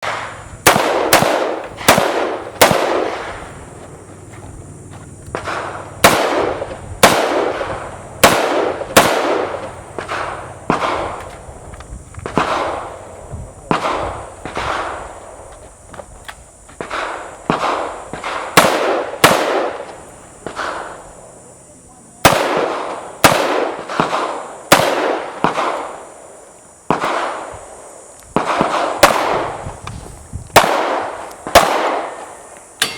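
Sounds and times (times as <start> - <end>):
gunshots with ringing echo: 0.0 - 3.8, 4.7 - 11.3, 12.3 - 15.4, 16.9 - 19.8, 22.2 - 26.0, 30.6 - 32.9.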